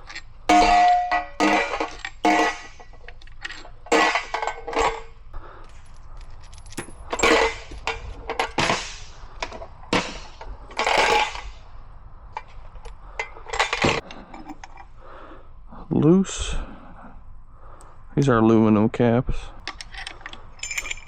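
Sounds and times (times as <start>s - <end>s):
hand tools clanking on steel: 0.0s - 11.6s, 12.4s - 14.9s, 19.6s - 21.0s.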